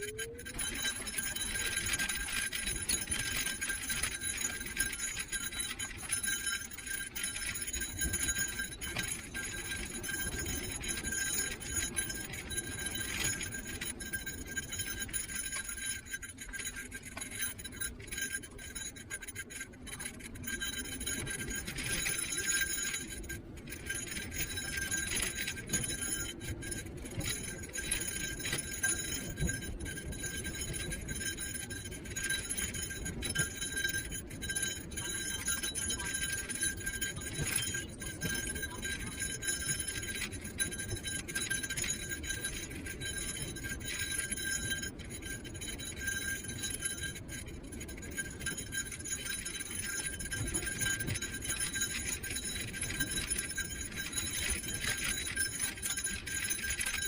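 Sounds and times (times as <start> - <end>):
electric scooter motor whine: 0.0 - 18.9
light clinking rattles: 0.0 - 57.0.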